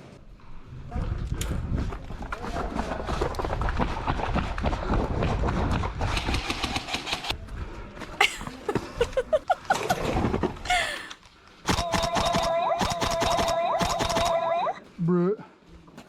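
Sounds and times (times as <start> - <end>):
electric airsoft gun full-auto burst: 11.7 - 14.6.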